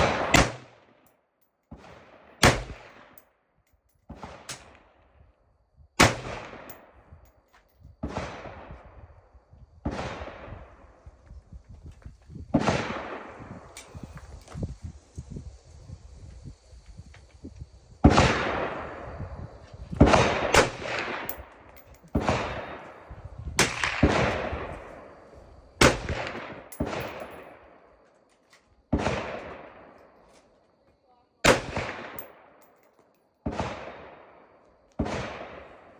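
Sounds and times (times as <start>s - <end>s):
gunshots echoing: 0.0s - 0.7s, 2.4s - 3.2s, 25.8s - 27.4s, 31.5s - 32.3s.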